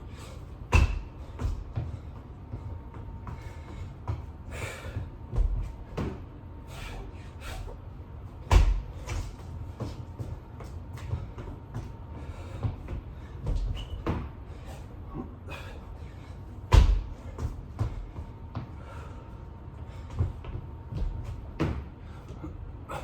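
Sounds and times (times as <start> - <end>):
hands and feet thumping floor: 0.7 - 4.4, 8.4 - 12.0.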